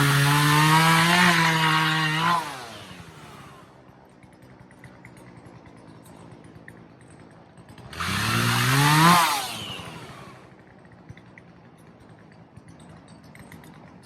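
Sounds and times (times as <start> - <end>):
chainsaw revving: 0.0 - 6.8, 7.6 - 11.3.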